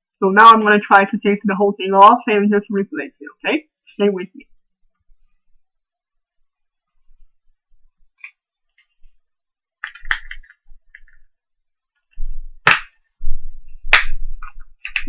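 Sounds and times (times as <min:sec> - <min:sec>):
sharp snap: 0:12.6 - 0:13.0, 0:13.9 - 0:14.2.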